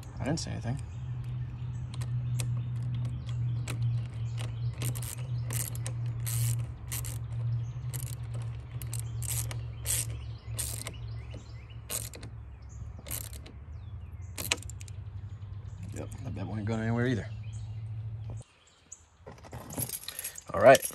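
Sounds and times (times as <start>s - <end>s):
ratchet wrench clicking: 1.9s - 12.3s, 13.0s - 13.5s, 14.4s - 14.9s.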